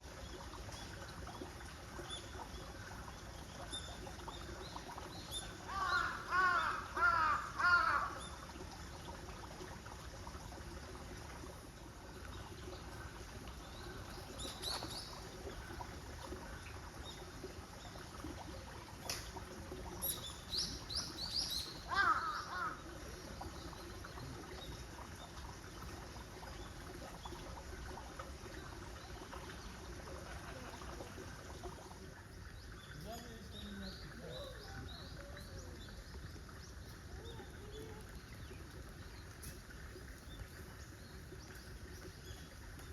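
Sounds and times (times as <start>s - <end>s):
faint outdoor background: 0.0s - 42.9s
small bird calls: 3.6s - 8.4s
crow cawing: 5.7s - 8.2s, 21.9s - 22.8s.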